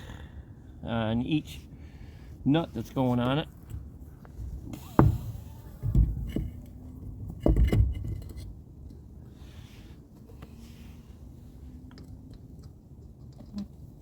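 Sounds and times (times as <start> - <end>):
dull thumps: 4.8 - 8.2.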